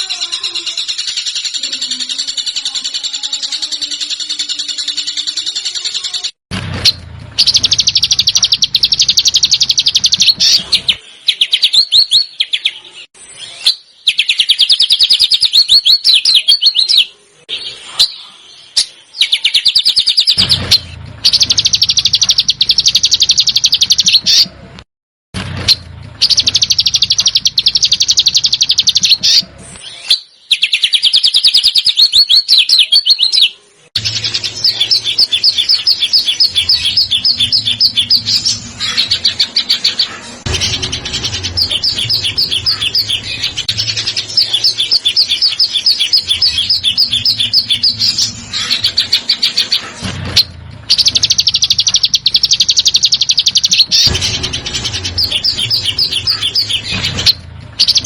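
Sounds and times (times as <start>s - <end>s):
songbird rattling trills: 7.4s - 11.0s, 19.4s - 24.4s, 26.2s - 29.4s, 34.0s - 49.8s, 50.4s - 58.0s.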